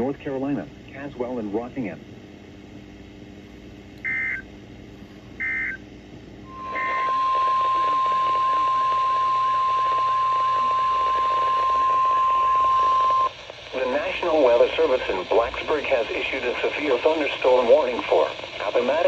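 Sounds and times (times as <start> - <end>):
steady warning alarm tone: 4.0 - 4.4, 5.4 - 5.8, 6.5 - 14.8
screeching digital data bursts: 6.5 - 14.3.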